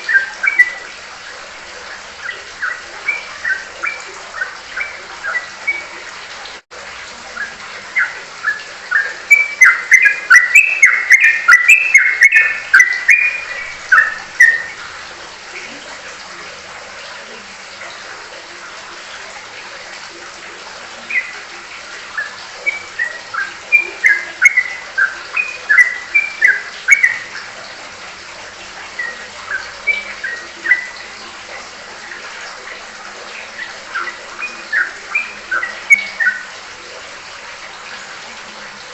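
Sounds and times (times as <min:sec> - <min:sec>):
bird singing chirped notes: 0:00.0 - 0:00.8, 0:02.2 - 0:06.0, 0:07.4 - 0:14.8, 0:22.1 - 0:27.4, 0:29.0 - 0:31.2, 0:33.3 - 0:36.5.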